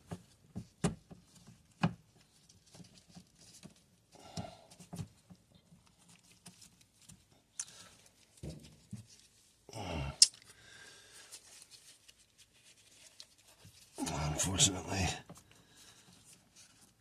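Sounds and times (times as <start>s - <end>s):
short rustle: 11.1s - 15.0s.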